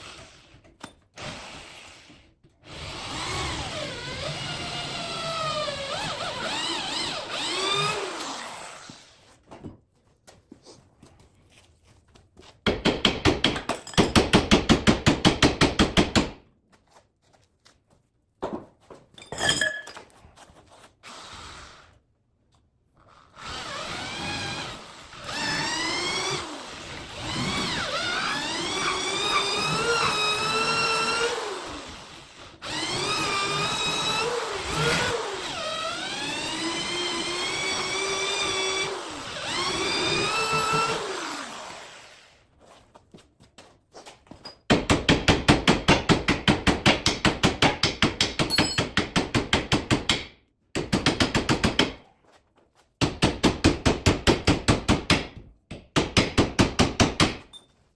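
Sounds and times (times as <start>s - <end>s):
rapid hammering strikes: 12.6s - 16.4s, 44.7s - 52.0s, 53.0s - 57.4s.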